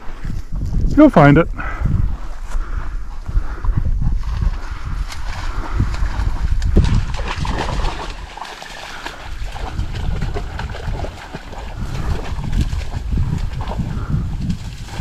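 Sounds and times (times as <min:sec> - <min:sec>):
wind rumbling on microphone: 0:00.0 - 0:15.0
dog splashing through wet cover: 0:06.8 - 0:13.8.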